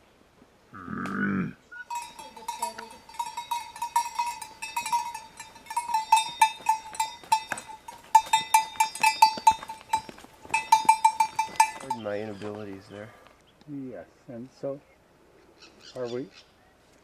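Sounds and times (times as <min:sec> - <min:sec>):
metal bells clanking: 0:01.9 - 0:12.7.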